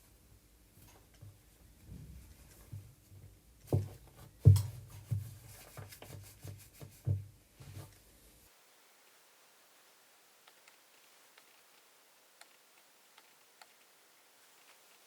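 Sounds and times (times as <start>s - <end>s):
soft thumps and knocks: 3.6s - 5.9s, 6.8s - 7.9s.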